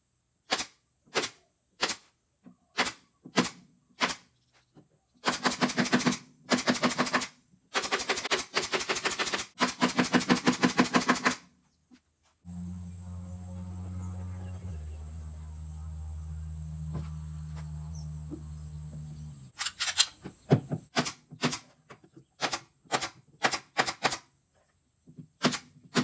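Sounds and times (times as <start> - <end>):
rapid tool clicking: 5.3 - 11.4, 22.4 - 24.3
low tone: 12.5 - 19.5.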